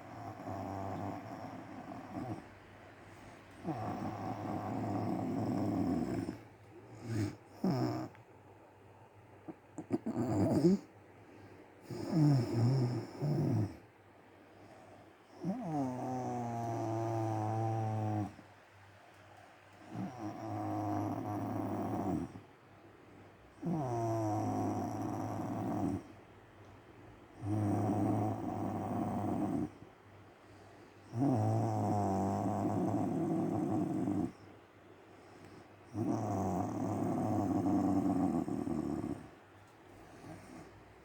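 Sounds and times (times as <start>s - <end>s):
woman snoring: 0.0s - 2.5s, 3.6s - 6.4s, 7.0s - 8.2s, 9.8s - 10.9s, 11.9s - 13.8s, 15.4s - 18.4s, 19.9s - 22.4s, 23.6s - 26.1s, 27.4s - 29.7s, 31.1s - 34.3s, 35.9s - 39.3s.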